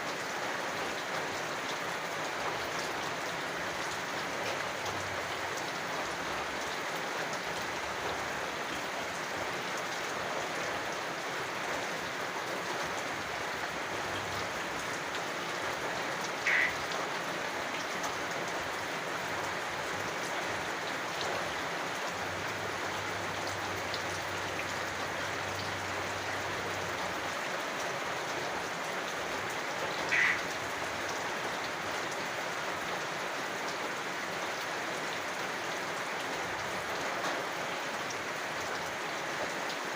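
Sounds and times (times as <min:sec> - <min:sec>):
steady rain falling: 0:00.0 - 0:39.9
frog call: 0:16.4 - 0:16.8, 0:30.1 - 0:30.5.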